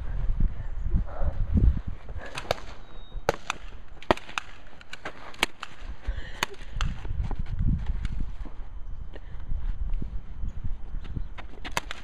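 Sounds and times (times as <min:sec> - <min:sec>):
airsoft guns firing: 0:02.3 - 0:05.8.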